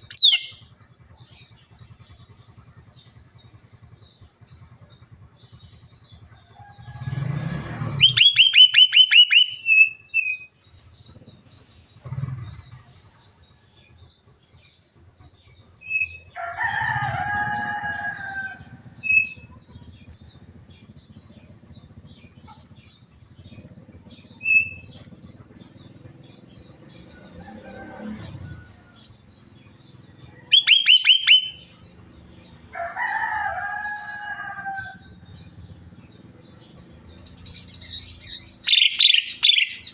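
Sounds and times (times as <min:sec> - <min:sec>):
bird whistling calls: 0:00.0 - 0:00.7, 0:08.0 - 0:10.5, 0:15.8 - 0:16.3, 0:18.8 - 0:19.5, 0:23.5 - 0:25.6, 0:30.3 - 0:31.8, 0:37.2 - 0:39.9.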